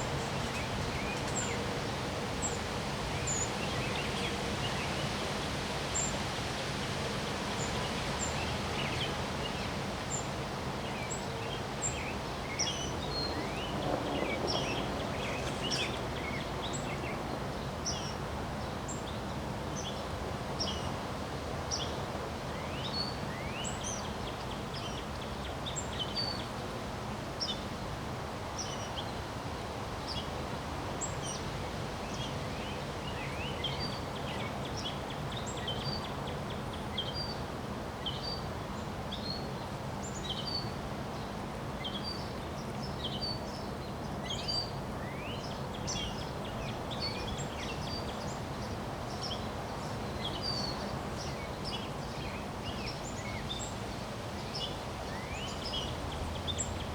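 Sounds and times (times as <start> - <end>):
small birds chirping: 11.9 - 17.2.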